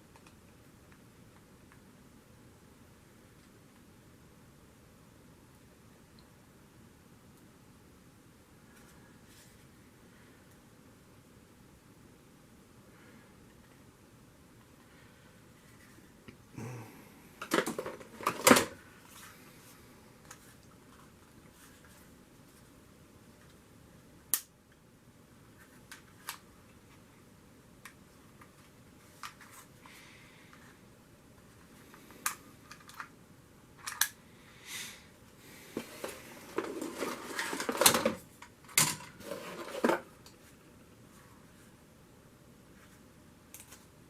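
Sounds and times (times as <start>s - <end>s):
rustling and clattering: 35.7s - 40.6s.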